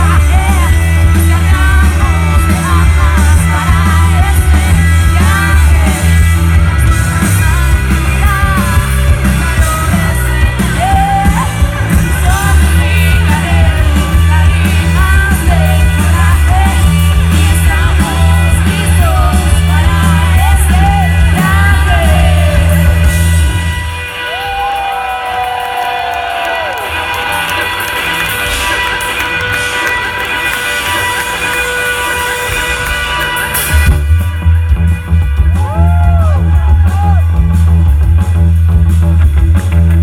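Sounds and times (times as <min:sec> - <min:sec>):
person singing: 0:00.0 - 0:23.3
rock band playing live: 0:00.0 - 0:40.0.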